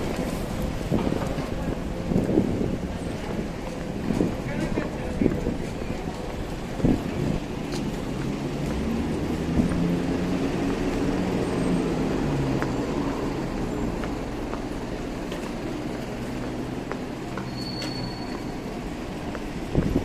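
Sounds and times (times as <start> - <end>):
street noise: 0.0 - 20.0.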